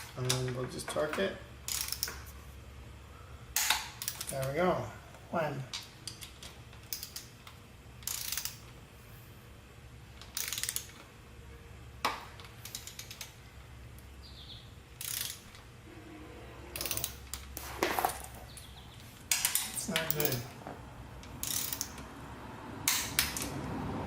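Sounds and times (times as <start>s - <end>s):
steady low hum: 0.0s - 24.0s
ratchet wrench clicking: 1.6s - 2.2s, 3.6s - 4.4s, 5.8s - 8.7s, 10.2s - 11.0s, 12.4s - 13.4s, 15.0s - 15.6s, 16.8s - 17.5s, 19.3s - 20.5s, 21.2s - 22.1s, 22.8s - 23.6s.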